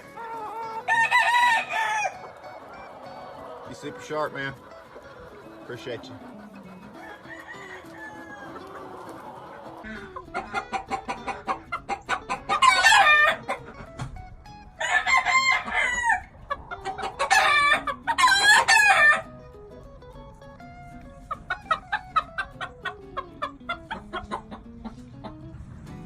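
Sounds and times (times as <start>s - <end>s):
roosters crowing: 0.0s - 19.4s
soft clucking: 0.0s - 26.0s.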